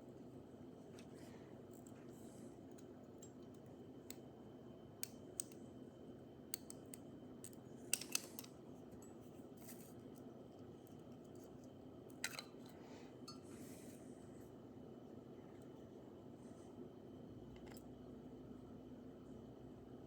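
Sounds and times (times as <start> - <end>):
small parts clicking: 6.6 - 8.6.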